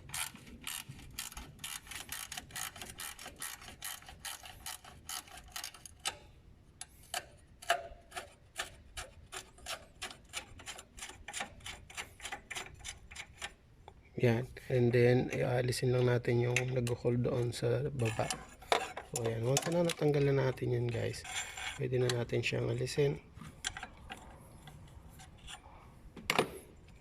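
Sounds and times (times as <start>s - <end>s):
ratchet wrench clicking: 0.1s - 6.2s.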